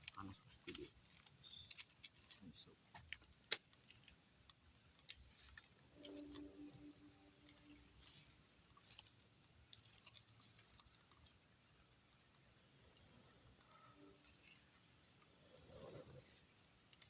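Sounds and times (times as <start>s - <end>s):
faint clicks and ticks: 0.0s - 17.0s
low hum: 5.8s - 8.4s.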